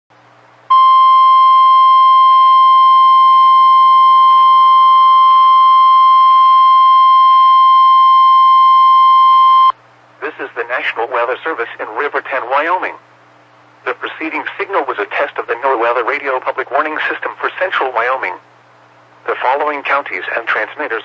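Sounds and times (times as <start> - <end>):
steady warning alarm tone: 0.7 - 9.7.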